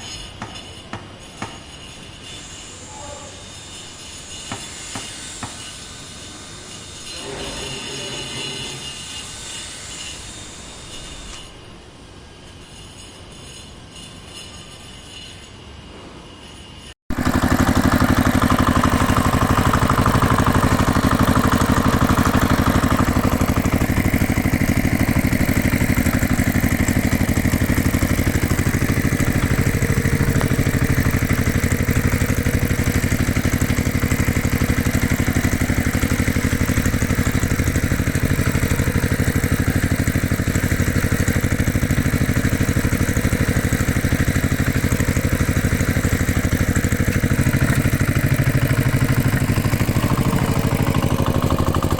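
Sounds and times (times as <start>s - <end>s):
higher whir: 17.1s - 51.9s
tractor engine idling: 17.1s - 51.9s.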